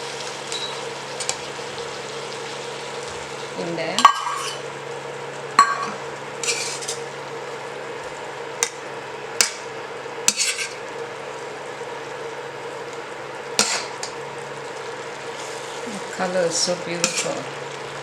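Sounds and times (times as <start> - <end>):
curry sizzling in pan: 0.0 - 18.0
spoon stirring and scraping: 4.1 - 4.6, 5.6 - 7.0, 10.3 - 10.8, 17.0 - 17.4.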